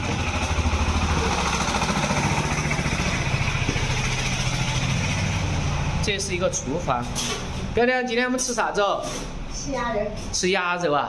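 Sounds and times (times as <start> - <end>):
engine chugging: 0.0 - 8.7.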